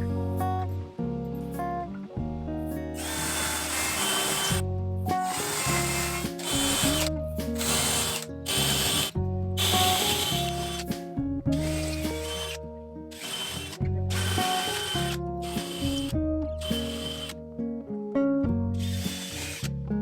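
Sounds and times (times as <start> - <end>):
guitar music: 0.0 - 20.0
power drill boring: 3.0 - 4.6, 5.2 - 10.9, 11.5 - 17.4, 18.8 - 19.7.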